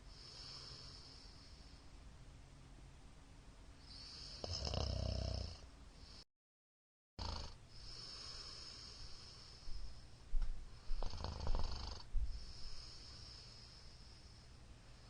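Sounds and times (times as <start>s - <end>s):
quiet breathing: 0.0s - 2.1s, 3.8s - 6.3s, 7.4s - 15.0s
man snoring: 0.1s - 1.2s, 3.9s - 6.2s, 7.2s - 9.6s, 10.8s - 13.8s.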